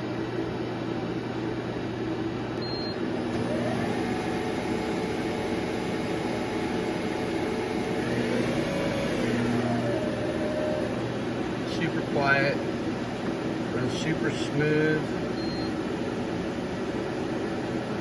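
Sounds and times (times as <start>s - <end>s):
machine hum: 0.0s - 18.0s
spindle whine rising in pitch: 3.4s - 13.0s.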